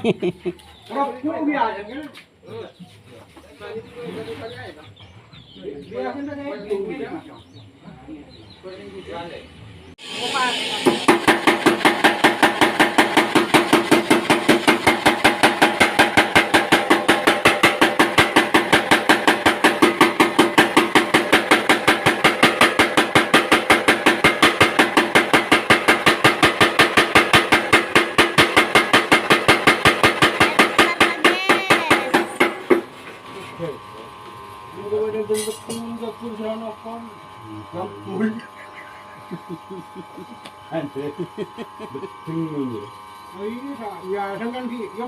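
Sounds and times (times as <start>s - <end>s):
power hammer striking metal: 10.0s - 32.9s, 35.3s - 36.1s.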